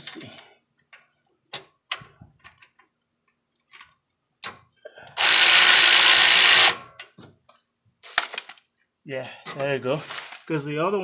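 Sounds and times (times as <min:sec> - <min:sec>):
power tool driving bolt: 0:05.2 - 0:07.2.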